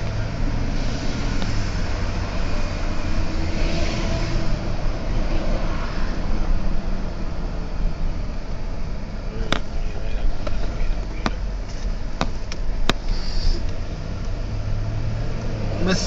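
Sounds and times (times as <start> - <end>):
car engine rumble: 0.0 - 16.0
tyre hiss: 13.0 - 13.7.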